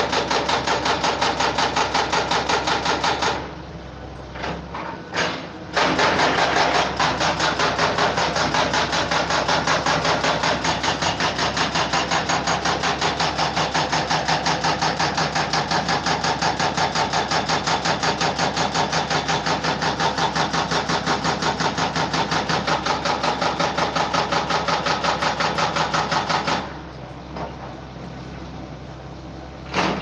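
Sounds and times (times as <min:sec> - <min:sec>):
machine pounding rhythmically: 0:05.8 - 0:26.7.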